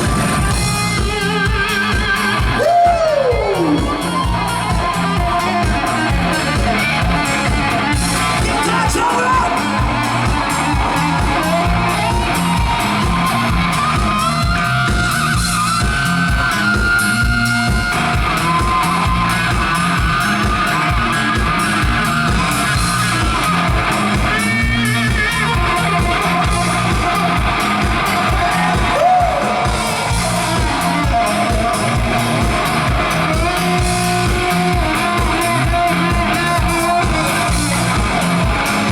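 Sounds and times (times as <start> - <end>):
rock band playing live: 0.0 - 38.9.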